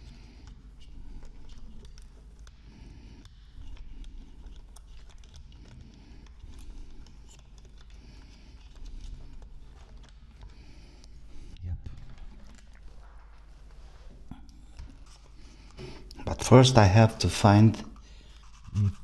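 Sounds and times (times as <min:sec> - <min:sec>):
laptop parts clicking: 0:00.0 - 0:13.1
hands rustling on plastic: 0:03.8 - 0:16.2.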